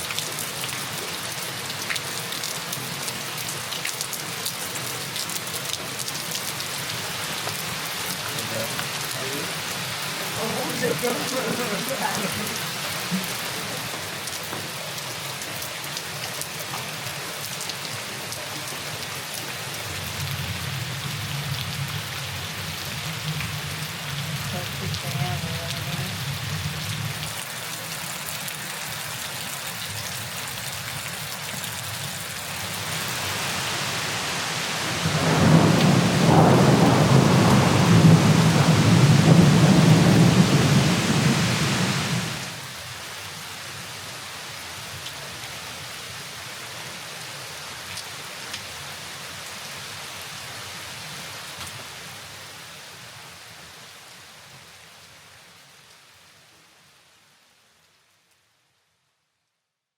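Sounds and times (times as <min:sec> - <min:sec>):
steady rain: 0:00.0 - 0:59.5
thunder rumbling: 0:34.7 - 0:42.5.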